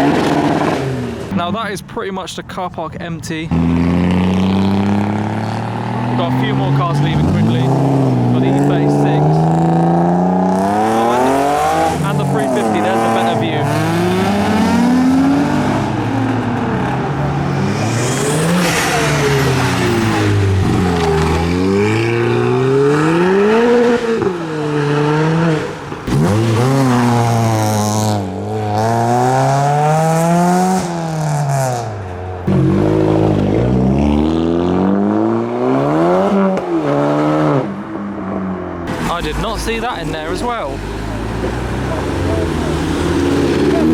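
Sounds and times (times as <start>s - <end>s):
car engine revving hard: 0.0s - 1.3s, 3.5s - 43.9s.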